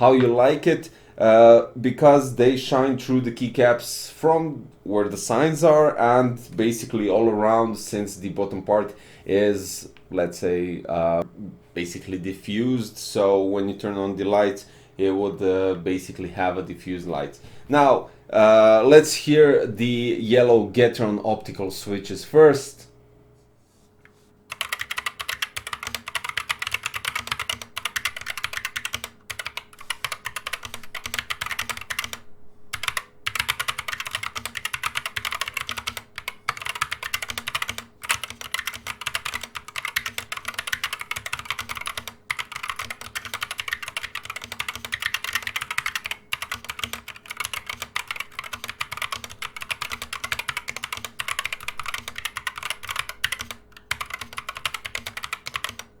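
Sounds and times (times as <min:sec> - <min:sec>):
fast mechanical keyboard typing: 0:24.5 - 0:55.9.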